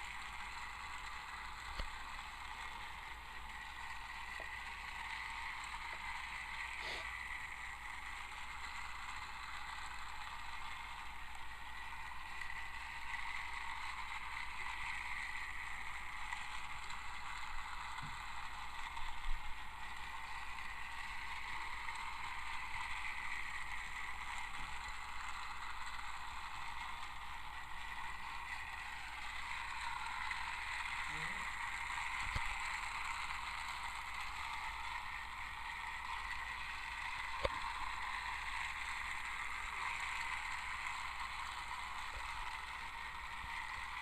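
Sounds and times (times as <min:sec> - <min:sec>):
toy train motor whirring: 0:00.0 - 0:44.0.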